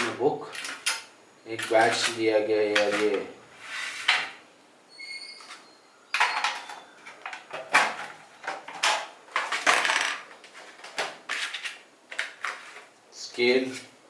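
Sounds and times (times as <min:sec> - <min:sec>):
faint squeak: 0:04.9 - 0:07.0.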